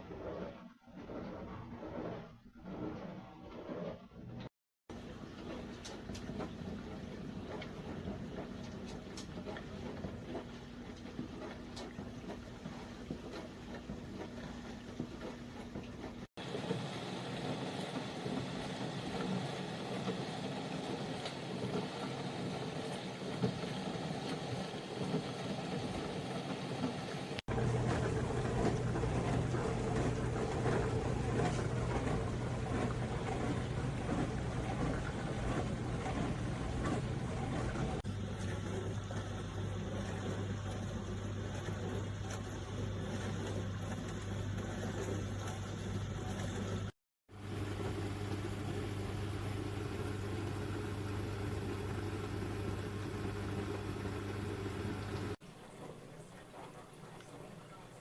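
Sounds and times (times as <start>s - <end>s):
small appliance motor humming: 27.4s - 55.4s.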